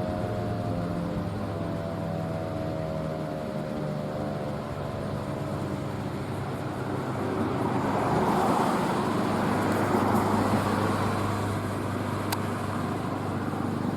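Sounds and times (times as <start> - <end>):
car passing: 6.6 - 13.4.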